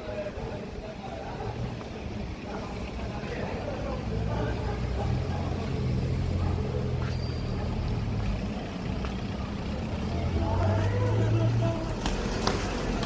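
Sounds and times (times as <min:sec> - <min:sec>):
street noise: 0:00.0 - 0:13.0
large vehicle engine running: 0:03.6 - 0:13.0.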